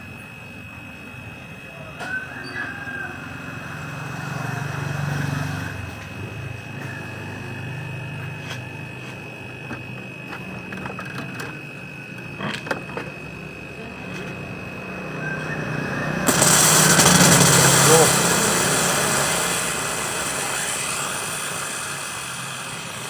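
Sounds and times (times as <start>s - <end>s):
compressor humming and whining: 0.0s - 23.0s
compressed gas rushing from pipe: 16.2s - 23.0s.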